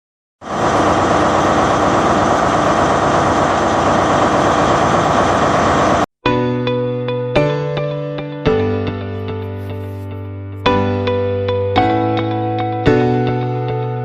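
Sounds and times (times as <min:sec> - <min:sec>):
underground train rumbling: 0:00.4 - 0:06.1
piano music: 0:06.2 - 0:14.0.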